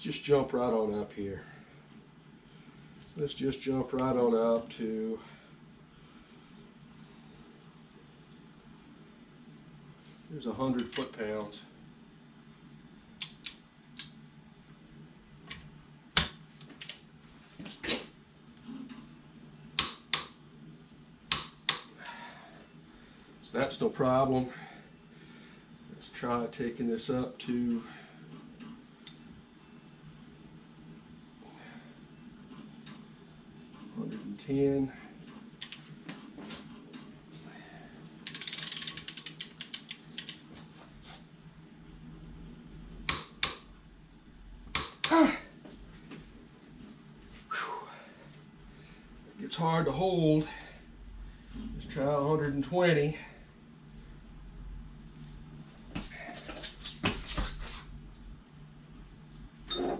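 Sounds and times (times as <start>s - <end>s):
torque wrench clicks and knocks: 38.3s - 40.4s.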